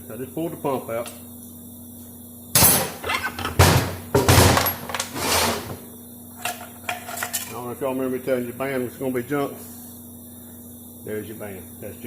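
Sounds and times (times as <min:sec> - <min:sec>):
metal parts clanking and scraping: 0:02.6 - 0:05.8, 0:06.4 - 0:07.5.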